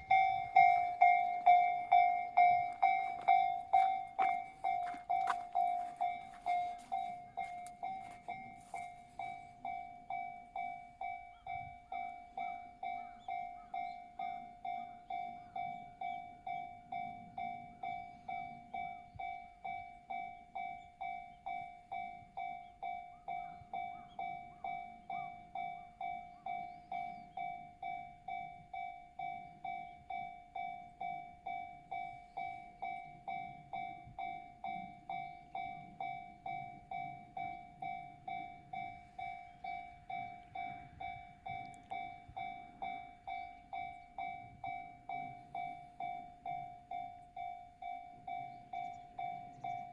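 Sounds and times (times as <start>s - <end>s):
train rumbling: 0.0s - 20.0s, 30.9s - 49.9s
level crossing warning bell ringing: 0.0s - 49.9s.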